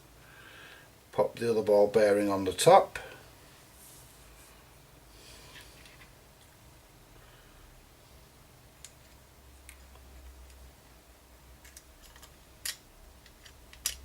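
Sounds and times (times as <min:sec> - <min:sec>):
small metal parts clicking: 0:11.6 - 0:14.0.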